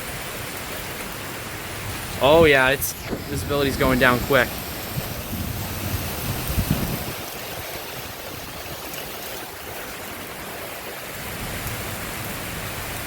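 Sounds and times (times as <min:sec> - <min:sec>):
wind-driven rain hiss: 0:00.0 - 0:13.0
wind buffeting microphone: 0:01.7 - 0:09.8.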